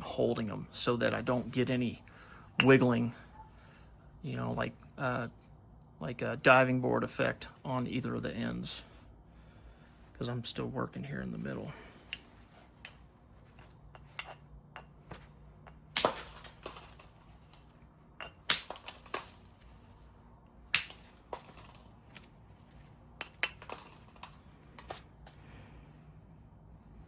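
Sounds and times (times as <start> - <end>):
stone striking stone cracks: 14.1 - 17.1, 18.2 - 19.4, 20.7 - 22.3, 23.2 - 25.0.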